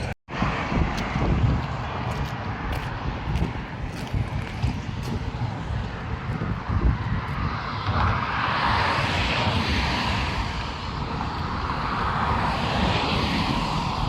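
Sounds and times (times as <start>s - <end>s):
steady rushing noise: 0.0s - 14.0s
wind buffeting microphone: 0.0s - 14.0s.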